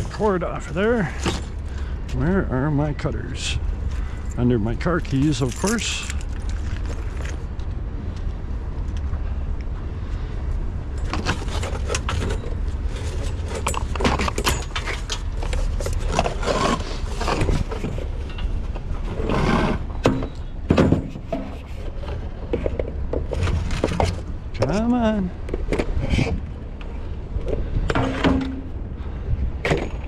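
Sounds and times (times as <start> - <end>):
steady low rumble: 0.0 - 30.0
cutters clicking and scraping: 3.1 - 7.4, 11.1 - 20.4.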